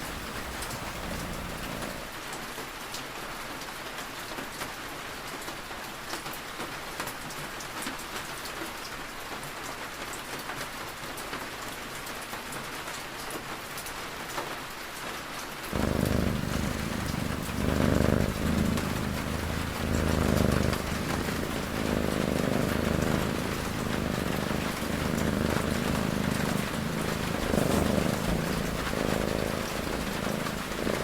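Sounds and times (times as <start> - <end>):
steady rain with pattering drops: 0.0 - 2.2, 15.7 - 31.0.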